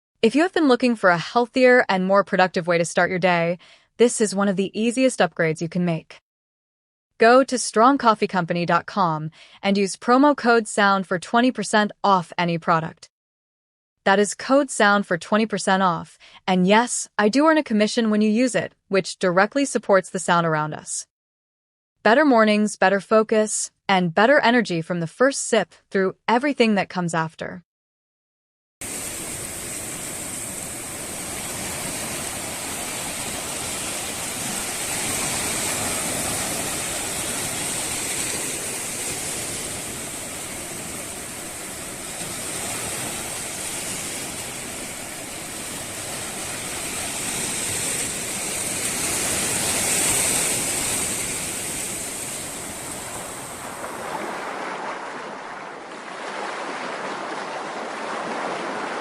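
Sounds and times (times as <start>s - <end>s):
rushing water: 28.8s - 59.0s.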